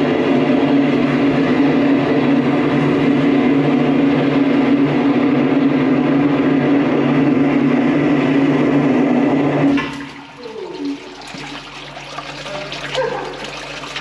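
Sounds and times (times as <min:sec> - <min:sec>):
drain jetter droning: 0:00.0 - 0:14.0
water rushing: 0:09.7 - 0:14.0
water splashing and trickling: 0:09.8 - 0:14.0.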